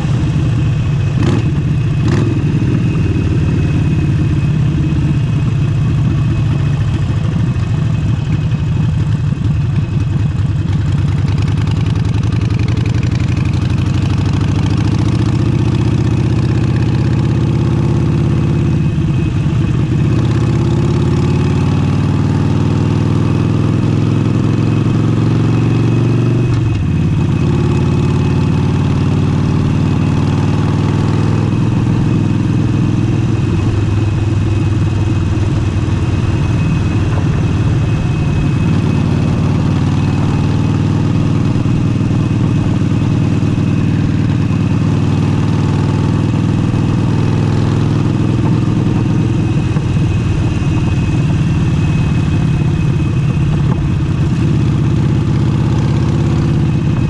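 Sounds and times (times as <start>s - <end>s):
motorcycle engine running: 0.0s - 57.0s
wind noise on microphone: 48.2s - 54.6s.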